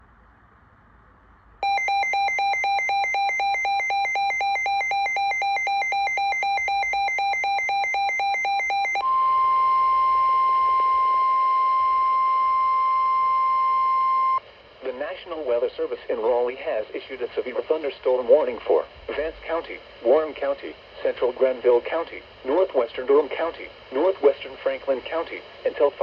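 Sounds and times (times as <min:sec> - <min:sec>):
high steady alarm tone: 0:01.6 - 0:14.4.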